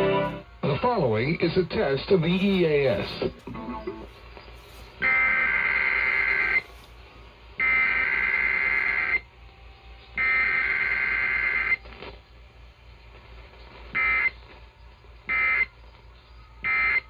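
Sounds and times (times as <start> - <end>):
digital data tone bursts: 0.0 - 6.7, 7.6 - 9.3, 10.2 - 11.9, 13.9 - 14.4
faint low hum: 0.0 - 17.0.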